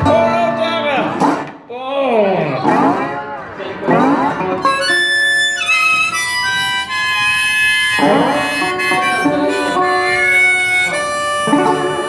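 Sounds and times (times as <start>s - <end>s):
blues harmonica: 3.9s - 12.0s.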